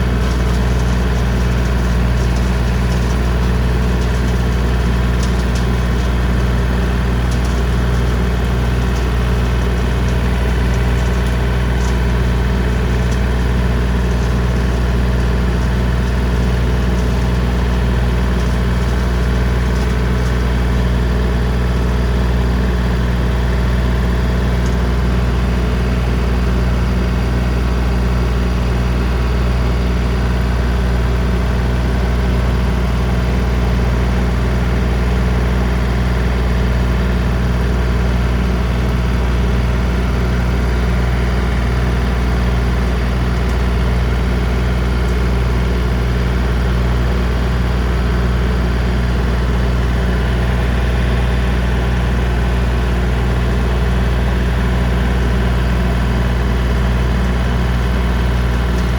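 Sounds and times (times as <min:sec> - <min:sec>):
tractor diesel engine droning: 0:00.0 - 0:58.9.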